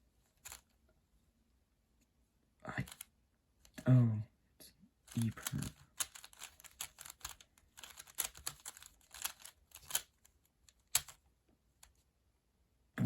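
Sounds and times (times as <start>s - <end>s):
puzzle cube clicking: 2.8s - 3.0s, 5.1s - 11.2s.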